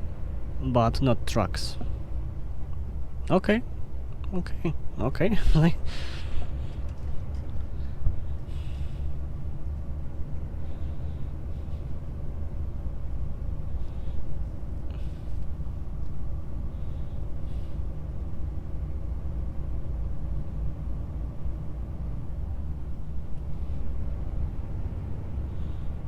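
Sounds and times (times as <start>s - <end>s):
diesel engine drone: 0.0s - 26.0s
road and tyre noise: 0.0s - 26.0s.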